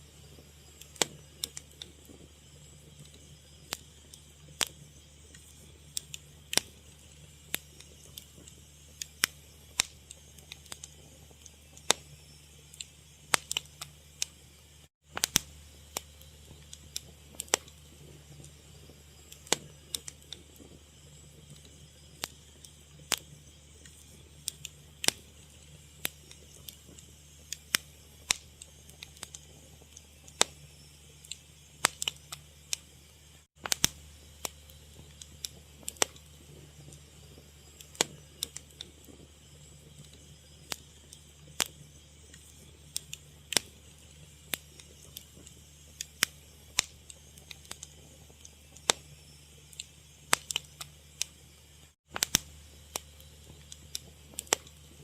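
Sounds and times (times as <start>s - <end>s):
low steady hum: 0.0s - 55.0s
wood fire crackling: 0.0s - 55.0s.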